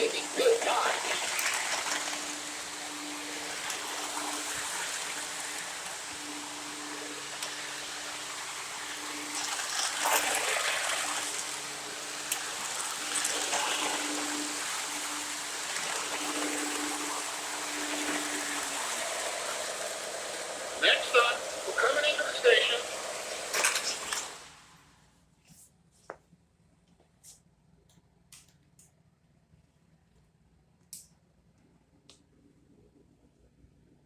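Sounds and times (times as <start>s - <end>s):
model train running on track: 0.0s - 24.8s.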